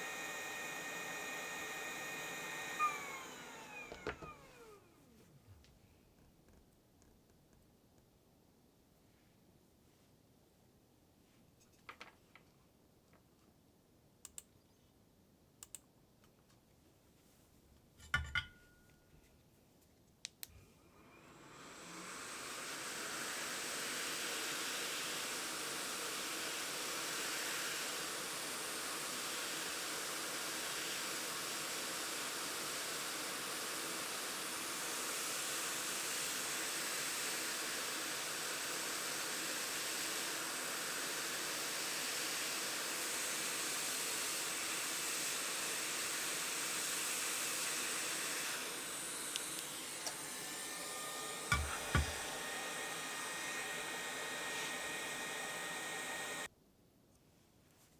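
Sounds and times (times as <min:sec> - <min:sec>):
hot air blowing hiss: 0:00.0 - 0:04.0, 0:21.3 - 0:56.5.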